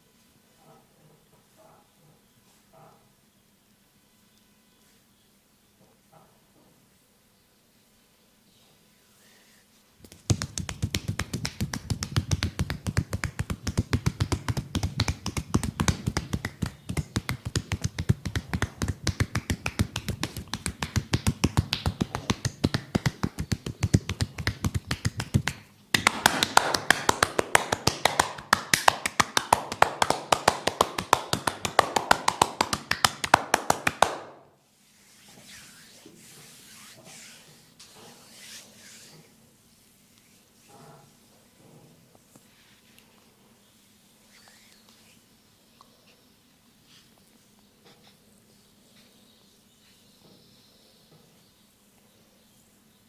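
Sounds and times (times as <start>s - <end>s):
hands tapping and chopping on head: 10.0s - 34.4s.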